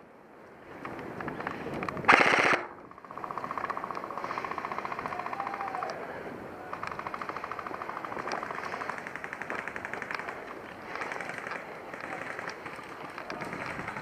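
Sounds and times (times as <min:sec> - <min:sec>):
airsoft guns firing bursts: 0:02.1 - 0:05.4, 0:06.8 - 0:14.0.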